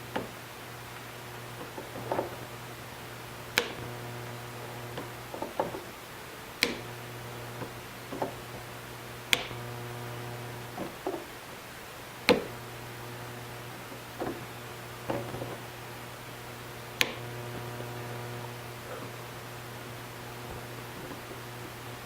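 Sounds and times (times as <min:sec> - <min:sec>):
tool handling clicks and knocks: 0:04.9 - 0:05.9
clippers snapping metal: 0:06.6 - 0:06.9, 0:09.3 - 0:09.6.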